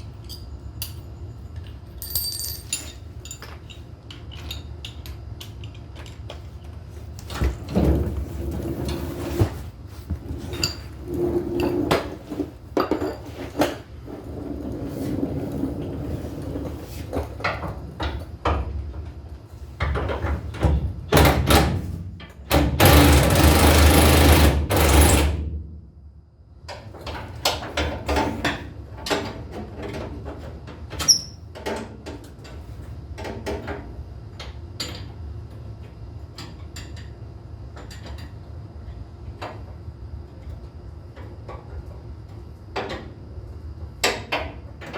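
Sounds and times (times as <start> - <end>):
hand tools clinking on metal: 0.2 - 5.1.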